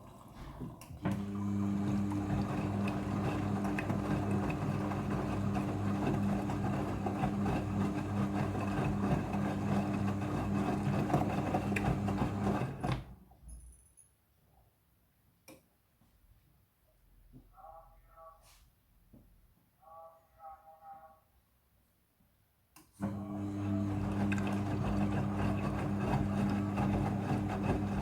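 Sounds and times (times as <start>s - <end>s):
washing machine humming: 0.0s - 13.2s, 23.0s - 28.0s.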